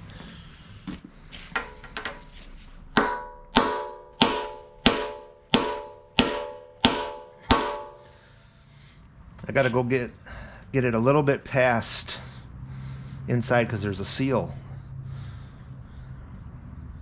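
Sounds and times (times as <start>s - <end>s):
hammer striking steel: 1.6s - 2.3s, 2.9s - 8.2s.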